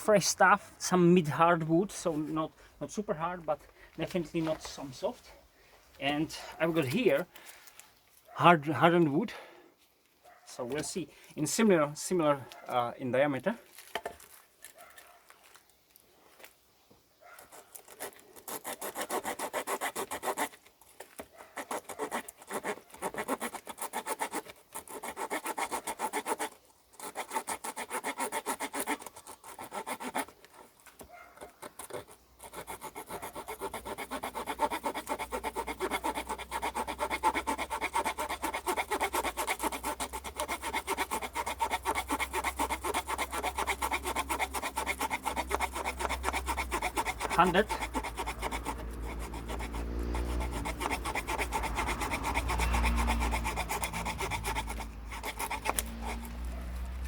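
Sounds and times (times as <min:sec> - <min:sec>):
small saw blade cutting wood: 0:17.3 - 0:57.0.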